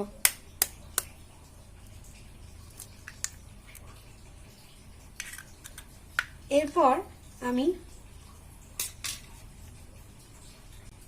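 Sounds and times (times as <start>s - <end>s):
egg cracking against bowl: 0.1s - 1.2s, 2.7s - 3.9s, 5.2s - 6.8s.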